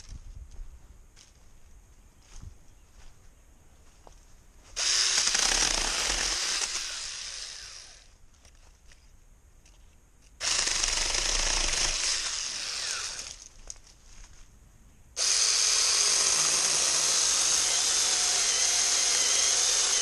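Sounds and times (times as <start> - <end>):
cordless chainsaw cutting wood: 4.8 - 8.1, 10.4 - 13.4, 15.2 - 20.0.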